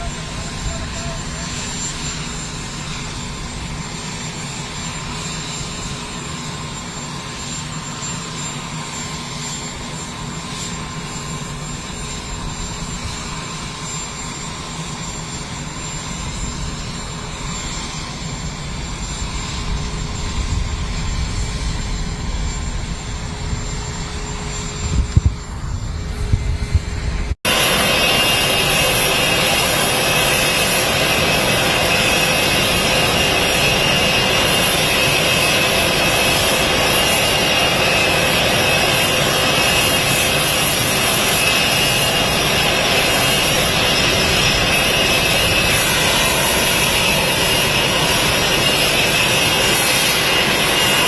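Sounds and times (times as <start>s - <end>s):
mechanical drone: 16.2s - 51.0s.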